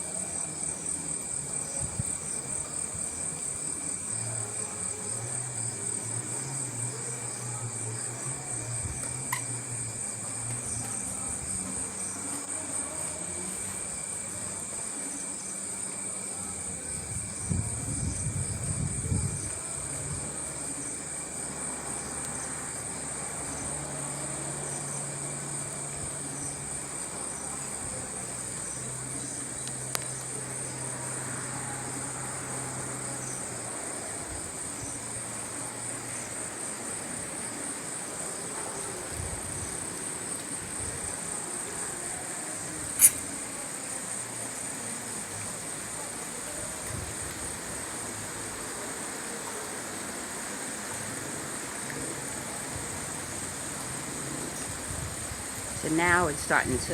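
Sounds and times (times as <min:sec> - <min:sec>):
crickets trilling: 0:00.0 - 0:56.9
sharp click: 0:43.0 - 0:43.4.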